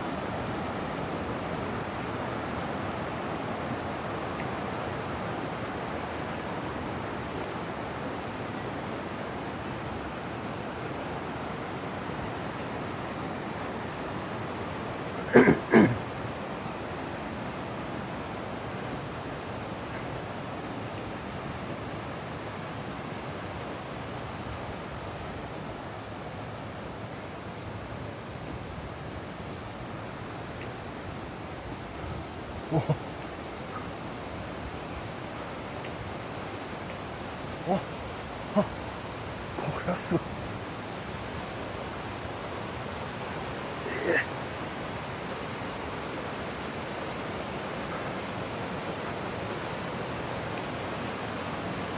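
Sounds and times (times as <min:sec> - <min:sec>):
waterfall rushing: 0:23.6 - 0:51.9.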